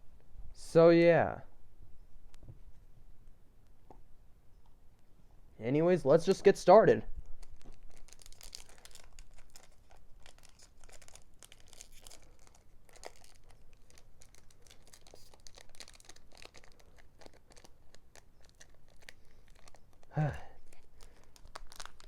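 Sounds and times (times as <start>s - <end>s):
wrapper tearing and crinkling: 7.4s - 22.0s.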